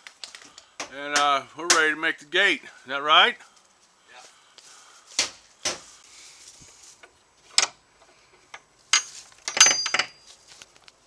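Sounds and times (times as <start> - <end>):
sharp knocks: 5.2 - 5.9
short metallic ring: 8.9 - 10.3.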